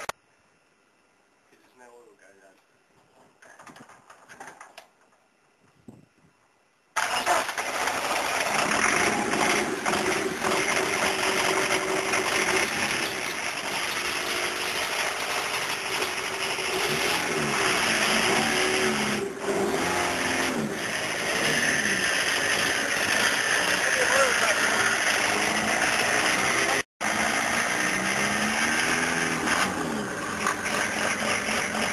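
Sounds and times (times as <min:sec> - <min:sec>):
diesel engine revving: 0:07.0 - 0:31.9.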